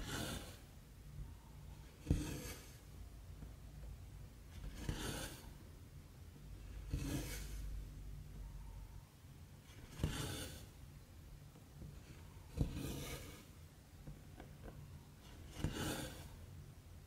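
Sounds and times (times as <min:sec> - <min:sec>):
thread rasping through cloth: 0:12.5 - 0:13.5.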